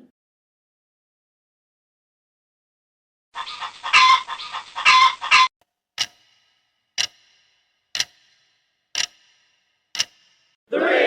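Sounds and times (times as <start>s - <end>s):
clock ticking: 6.0s - 10.6s.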